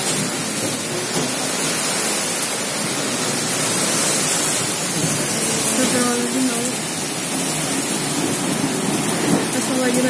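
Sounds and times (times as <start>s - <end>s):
heavy rain rushing hiss: 0.0s - 10.0s.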